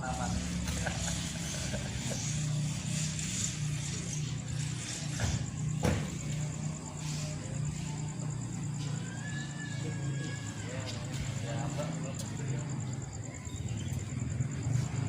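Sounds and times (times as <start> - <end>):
low engine rumble: 0.0 - 15.0
rapidly pulsing high chirp: 0.0 - 15.0.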